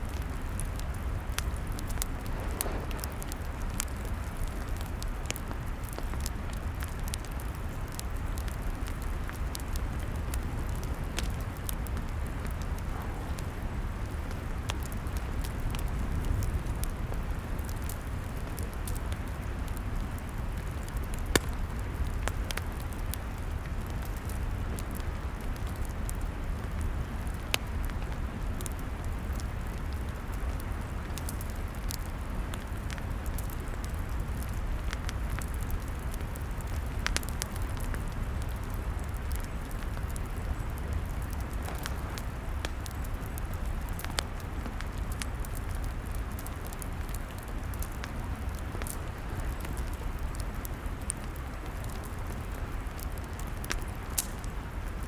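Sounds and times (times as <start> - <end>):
fire pops: 0.0 - 55.0
log fire crackling: 0.0 - 55.0
low rumble: 1.6 - 5.2, 12.0 - 16.3.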